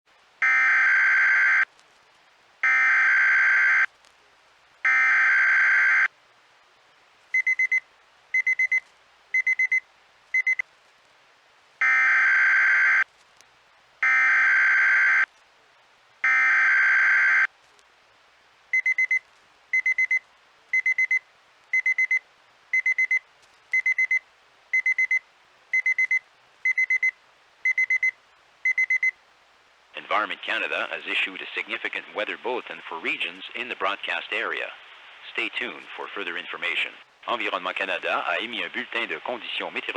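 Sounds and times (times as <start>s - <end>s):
high alarm beeps: 8.4s - 8.8s, 9.4s - 9.8s, 10.4s - 10.6s, 21.8s - 22.2s, 27.7s - 28.1s.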